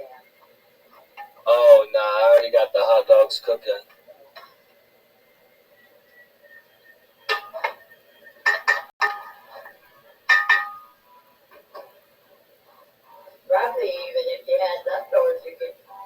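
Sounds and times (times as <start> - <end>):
cookware and utensils clinking: 7.2 - 12.1.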